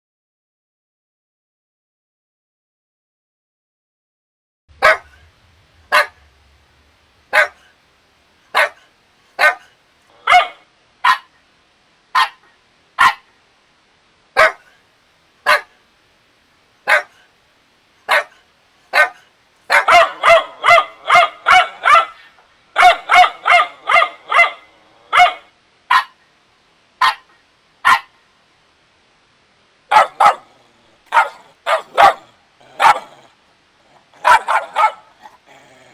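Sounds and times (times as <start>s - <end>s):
puppy barking: 4.8s - 5.3s, 5.9s - 6.2s, 7.3s - 7.7s, 8.5s - 11.4s, 12.2s - 13.3s, 14.4s - 14.8s, 15.4s - 15.8s, 16.9s - 17.3s, 18.1s - 26.2s, 27.0s - 28.2s, 29.9s - 33.3s, 34.1s - 35.4s.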